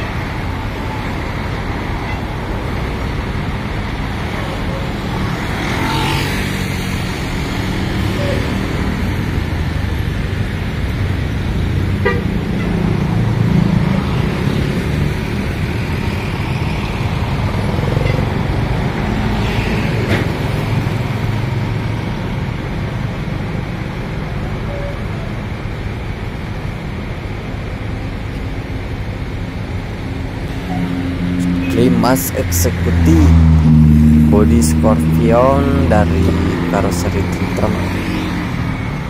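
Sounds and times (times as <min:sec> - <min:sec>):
diesel bus engine running: 0:00.0 - 0:05.5, 0:06.5 - 0:39.0
horn beep: 0:12.0 - 0:12.8.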